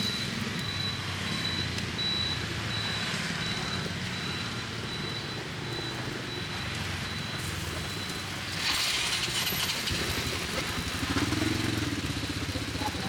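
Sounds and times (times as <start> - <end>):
motorbike engine running: 9.6 - 13.0.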